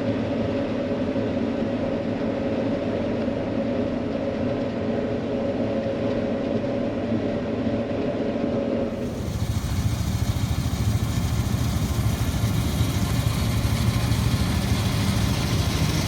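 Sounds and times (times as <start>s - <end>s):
combine harvester droning: 8.9s - 16.0s.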